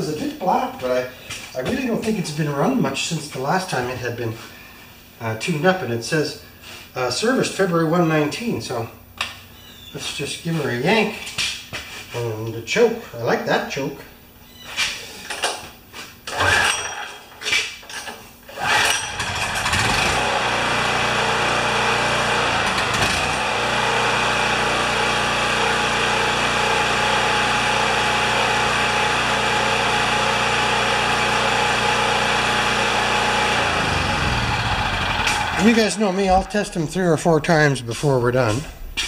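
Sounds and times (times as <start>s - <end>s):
generator recoil starter pulls: 16.2s - 21.0s, 21.6s - 23.6s, 33.3s - 37.4s
generator engine running: 18.6s - 39.0s.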